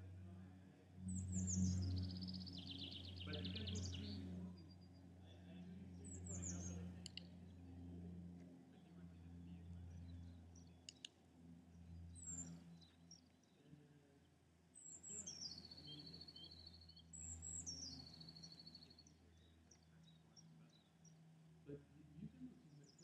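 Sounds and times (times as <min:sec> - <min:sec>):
steady low hum: 0:00.0 - 0:23.0
songbird trilling song: 0:01.0 - 0:05.1, 0:06.0 - 0:07.3, 0:12.0 - 0:13.7, 0:14.8 - 0:21.3.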